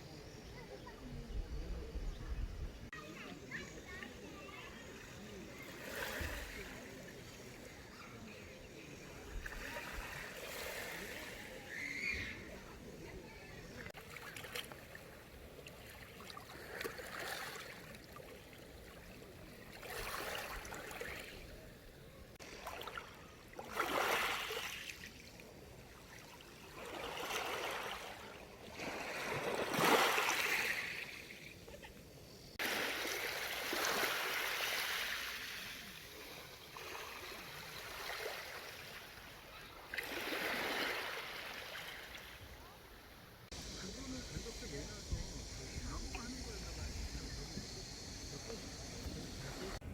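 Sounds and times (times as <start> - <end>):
water splashing in surges: 4.9 - 8.3, 9.1 - 21.8, 22.4 - 44.8.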